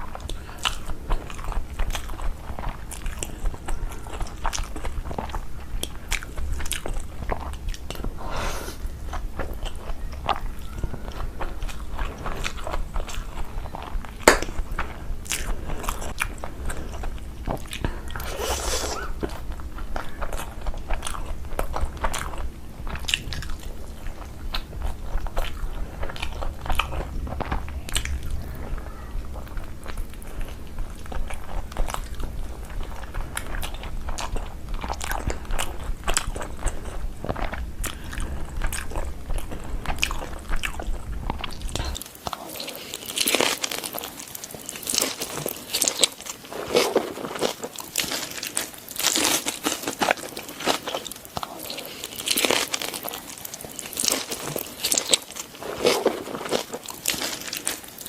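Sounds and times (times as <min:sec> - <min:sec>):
chewing and biting food: 0:00.0 - 0:58.0
low background hum: 0:00.0 - 0:58.0
crisp crunches: 0:09.4 - 0:58.0.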